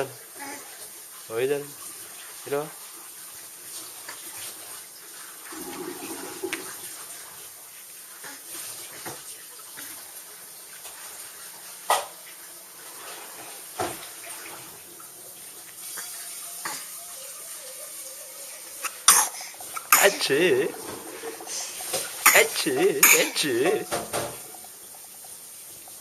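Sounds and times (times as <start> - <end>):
background hiss: 0.0 - 26.0
baby sneezing: 16.0 - 17.0, 18.7 - 20.8, 21.5 - 23.9.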